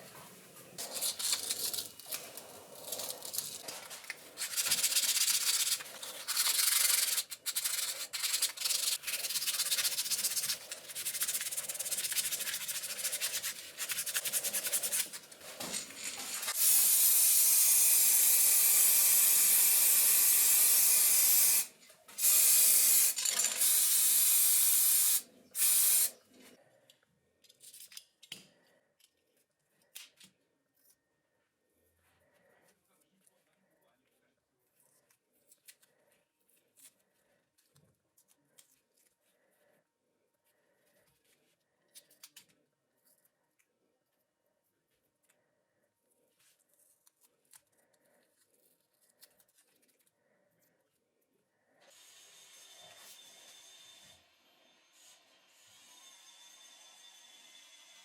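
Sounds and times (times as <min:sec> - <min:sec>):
hand sanding rusty metal: 0:04.4 - 0:15.2.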